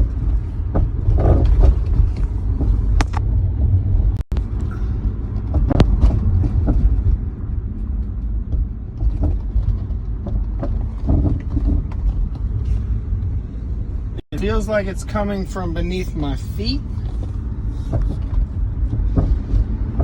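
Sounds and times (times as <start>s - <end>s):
road rumble inside car: 0.0s - 20.0s
sharp clunks under car floor: 17.8s - 20.0s.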